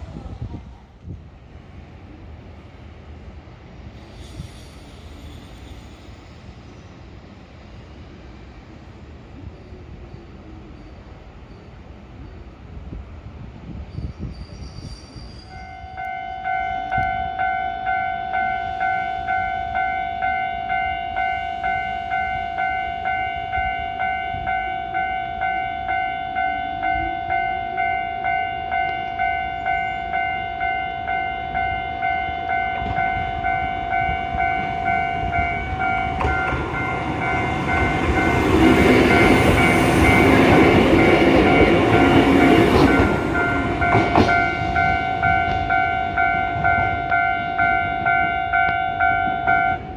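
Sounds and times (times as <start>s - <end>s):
train passing: 0.0s - 49.9s
level-crossing warning bell ringing: 15.4s - 49.9s.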